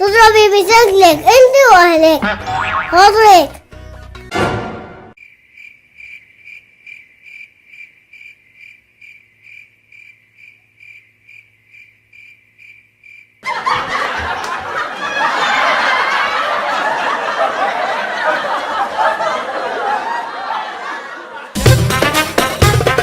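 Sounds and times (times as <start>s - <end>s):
crickets chirping: 5.2s - 13.4s
loud laughter: 13.4s - 21.6s.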